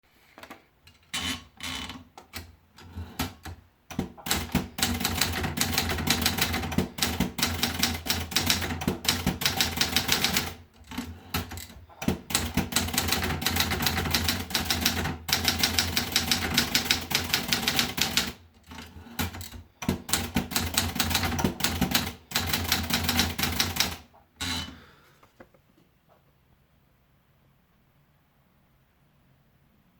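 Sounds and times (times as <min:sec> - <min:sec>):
typewriter typing: 0:01.2 - 0:24.7.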